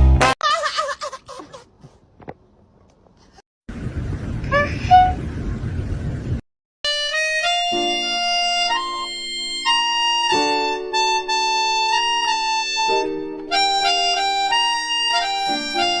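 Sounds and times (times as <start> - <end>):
background music with held chords: 6.9 - 16.0.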